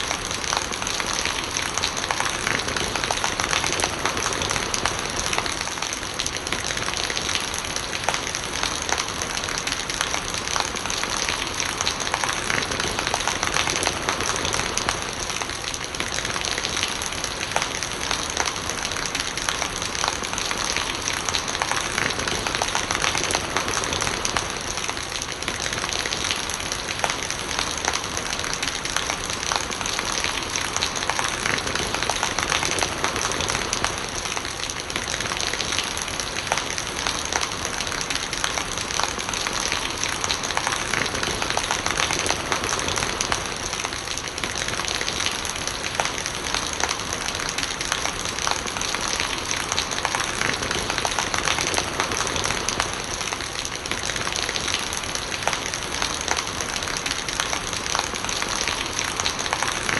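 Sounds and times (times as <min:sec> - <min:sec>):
rain spattering on surfaces: 0:00.0 - 0:59.9
rainwater gurgling: 0:00.0 - 0:59.9.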